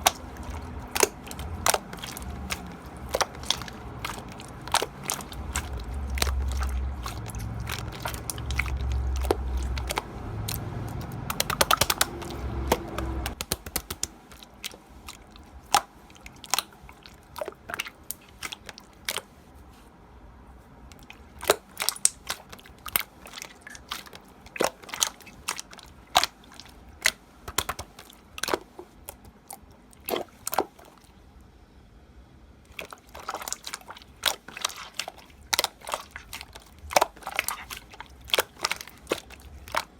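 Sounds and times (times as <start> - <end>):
dull pressing noise: 0.0 - 16.6
slime squeezed with crackling pops: 0.0 - 16.8, 21.3 - 28.8, 32.9 - 39.9.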